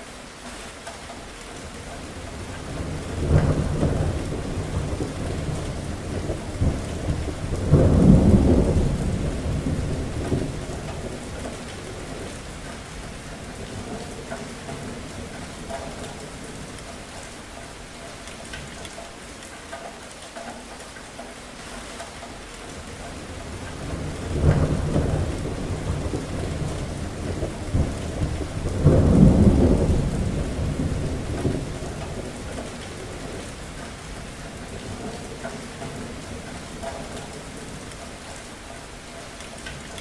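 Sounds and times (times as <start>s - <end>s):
steady rain: 0.0s - 40.0s
thunder rolling: 2.3s - 16.8s, 23.3s - 33.7s.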